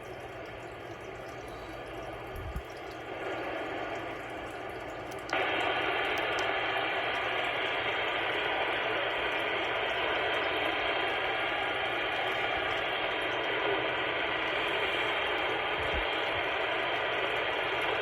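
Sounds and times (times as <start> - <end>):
radio static hiss: 5.3 - 18.0.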